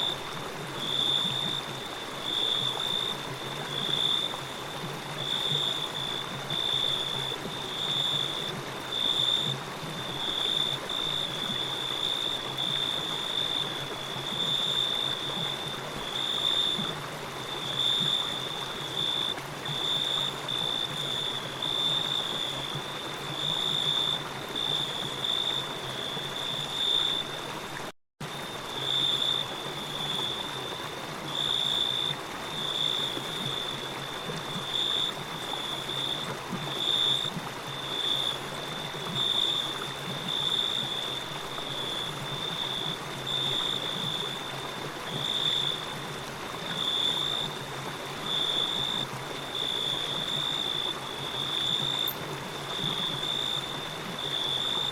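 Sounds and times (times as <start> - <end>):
water rushing in a stream: 0.0 - 54.9.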